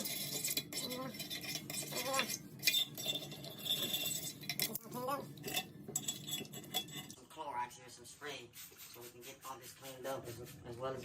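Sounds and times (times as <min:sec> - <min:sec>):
hard objects clinking and clattering: 0:00.0 - 0:07.2.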